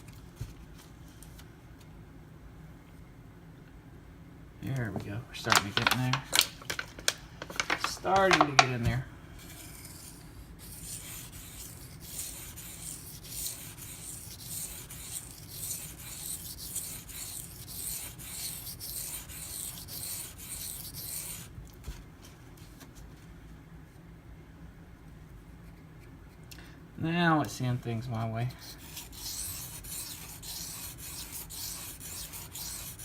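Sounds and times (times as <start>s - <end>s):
knife scraping on whetstone: 9.4s - 21.5s, 28.6s - 33.0s.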